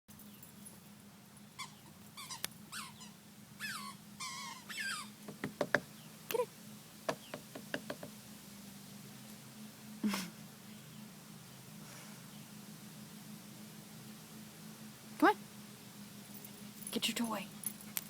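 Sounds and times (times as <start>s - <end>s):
pet squeaky toy squeaking: 1.6s - 5.1s.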